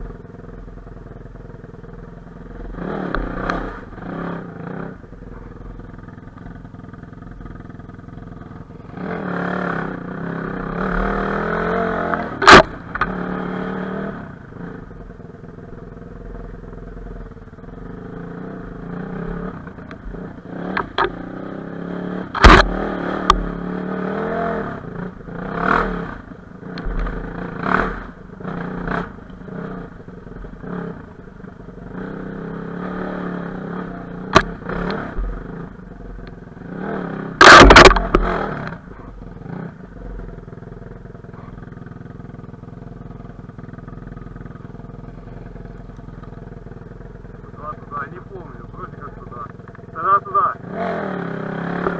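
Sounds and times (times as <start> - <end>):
dirt bike engine revving: 2.3 - 15.2, 16.7 - 51.9
sharp knocks: 22.4 - 23.5.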